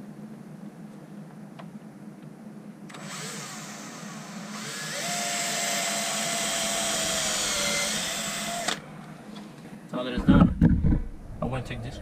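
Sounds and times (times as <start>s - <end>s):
power drill whining: 2.9s - 8.8s.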